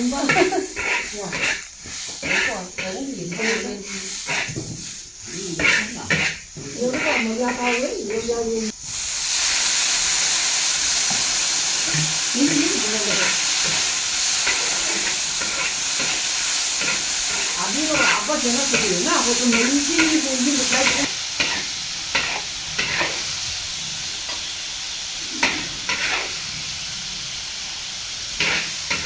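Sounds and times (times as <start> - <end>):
greens sizzling in a wok: 0.0 - 29.0
spatula scraping and clacking on pan: 0.2 - 8.4, 11.1 - 23.3, 25.3 - 26.4, 28.4 - 29.0.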